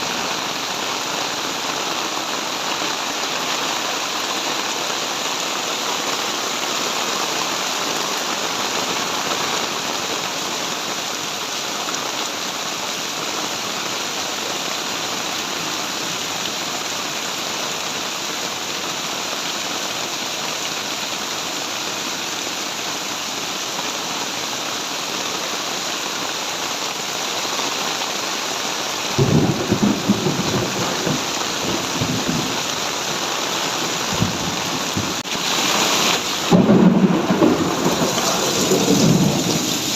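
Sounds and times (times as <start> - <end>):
heavy rain pouring: 0.0 - 39.9
thunder rumbling: 29.2 - 32.9, 33.9 - 35.3, 36.4 - 39.9.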